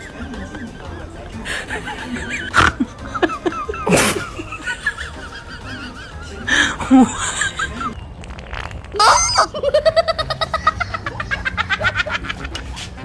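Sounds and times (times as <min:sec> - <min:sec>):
music: 0:00.0 - 0:08.0, 0:10.8 - 0:13.0
squeaky chirps: 0:05.8 - 0:09.8.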